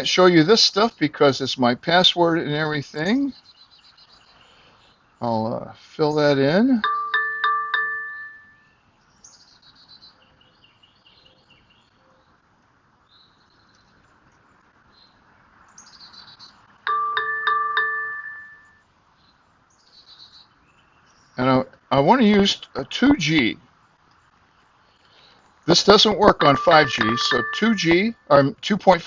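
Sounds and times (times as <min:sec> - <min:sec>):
faint birds chirping: 0:02.3 - 0:28.7
bright metallic chime: 0:06.8 - 0:08.7, 0:16.9 - 0:18.8, 0:26.3 - 0:28.2.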